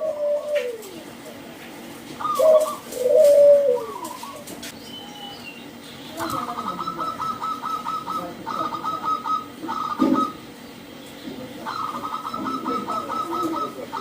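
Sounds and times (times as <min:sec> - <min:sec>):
lower soft cooing: 0:00.0 - 0:01.2, 0:02.2 - 0:04.5, 0:11.6 - 0:14.0
doves cooing staccato: 0:00.0 - 0:01.4, 0:02.2 - 0:14.0.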